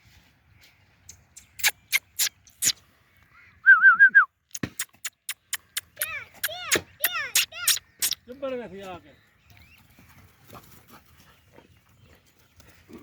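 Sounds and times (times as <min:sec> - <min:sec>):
sharp clicks: 0:01.4 - 0:02.8, 0:04.5 - 0:08.2.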